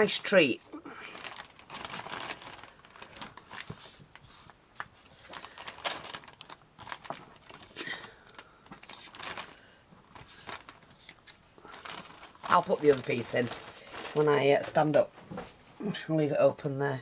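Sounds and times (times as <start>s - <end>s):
paper rustling and crinkling: 0.0s - 15.6s
small crackles and taps: 1.6s - 13.7s.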